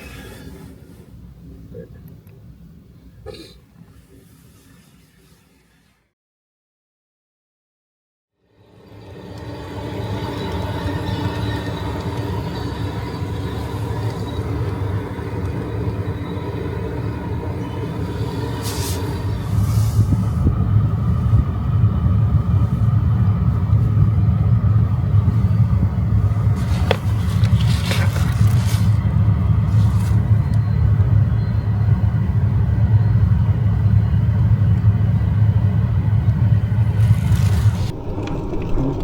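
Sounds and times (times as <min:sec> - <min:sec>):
steady low rumble: 0:09.7 - 0:39.0.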